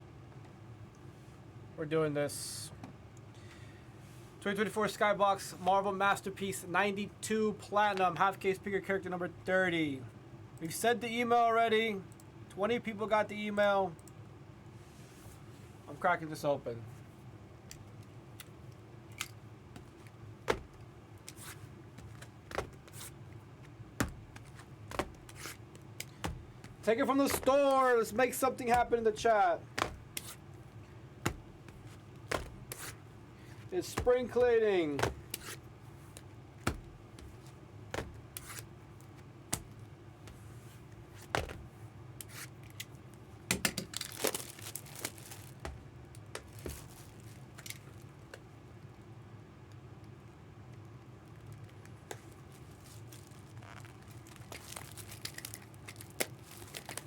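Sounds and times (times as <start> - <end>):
card pack wrappers tearing: 24.4 - 30.4, 43.8 - 45.7, 52.2 - 57.0
wrapper crinkling: 43.8 - 48.1, 51.3 - 57.0.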